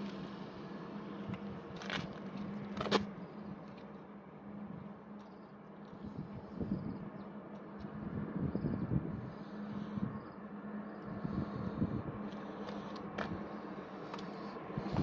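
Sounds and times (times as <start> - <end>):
steady low hum: 0.0 - 15.0
wind rumble on microphone: 5.9 - 15.0.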